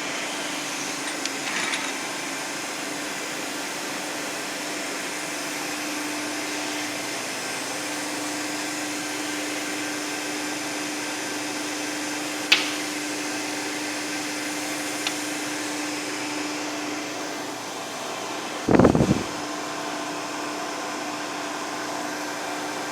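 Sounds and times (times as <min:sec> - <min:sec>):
sharp click: 0:12.5 - 0:12.9.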